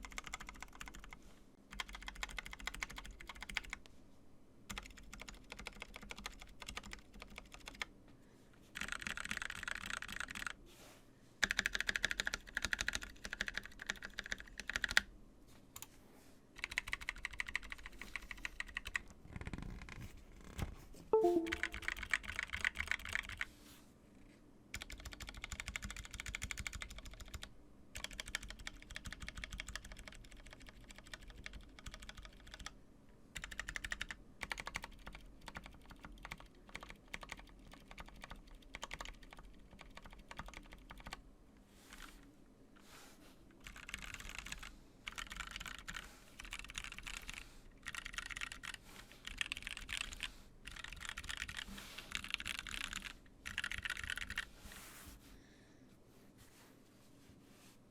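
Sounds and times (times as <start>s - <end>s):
mechanical keyboard typing: 0.0s - 3.8s, 4.7s - 7.9s, 8.8s - 10.6s, 11.4s - 15.1s, 16.6s - 20.0s, 21.2s - 23.5s, 24.8s - 32.8s, 33.4s - 41.2s, 43.6s - 54.5s.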